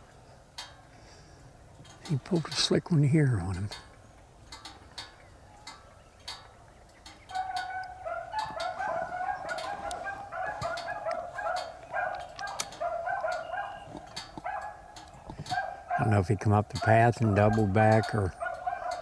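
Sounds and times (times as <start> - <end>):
beagles barking: 7.1 - 19.0.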